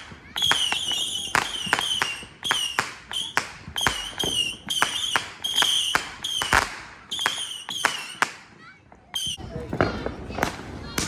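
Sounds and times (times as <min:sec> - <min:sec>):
fireworks whistles: 0:00.0 - 0:09.8
fireworks pops and crackles: 0:00.0 - 0:11.0.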